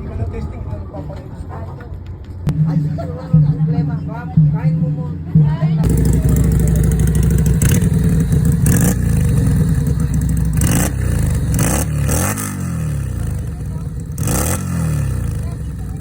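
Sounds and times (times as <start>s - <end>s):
motorcycle engine revving: 5.8s - 16.0s.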